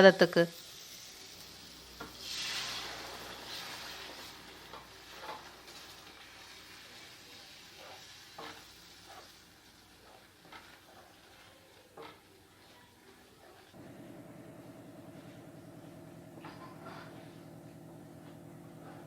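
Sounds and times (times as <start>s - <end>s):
water sizzling in hot pan: 0.0s - 13.8s.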